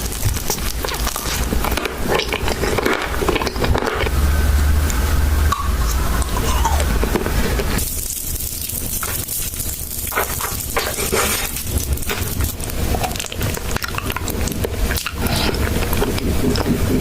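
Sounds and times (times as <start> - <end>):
crunchy chewing: 0.0 - 4.1, 4.9 - 17.0
steady low rumble: 3.6 - 10.1.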